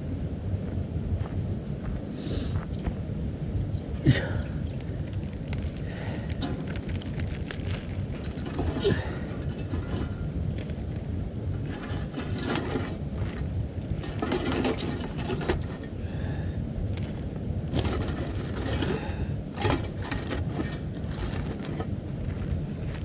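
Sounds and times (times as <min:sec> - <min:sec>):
wind rumble on microphone: 0:00.0 - 0:23.0
wood fire crackling and snapping: 0:04.8 - 0:15.8.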